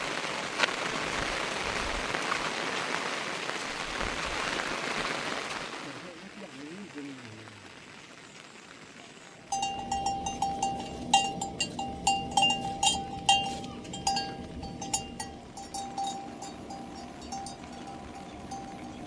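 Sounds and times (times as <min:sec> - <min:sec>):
steady background hiss: 0:00.0 - 0:19.0
metal livestock bell clanking: 0:09.5 - 0:19.0.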